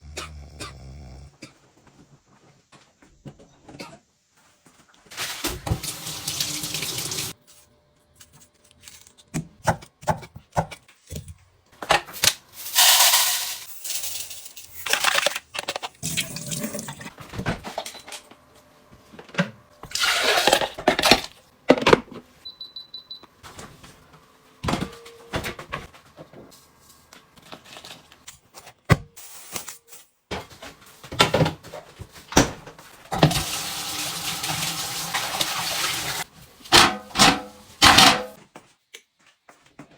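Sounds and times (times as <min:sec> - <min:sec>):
tap running at a sink: 0:05.4 - 0:07.4, 0:33.1 - 0:36.3.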